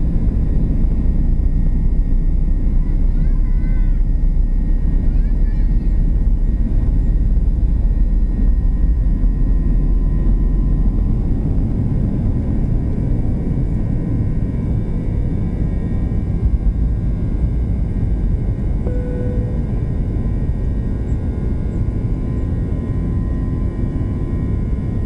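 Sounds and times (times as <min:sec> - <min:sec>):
jet engines rumbling in cabin: 0:00.0 - 0:25.0
short steady tone: 0:18.8 - 0:20.1.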